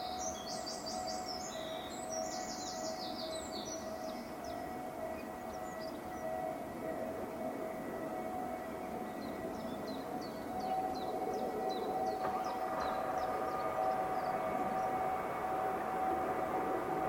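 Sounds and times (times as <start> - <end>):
two-tone alarm: 0.0 - 17.0
higher alarm tone: 10.4 - 17.0.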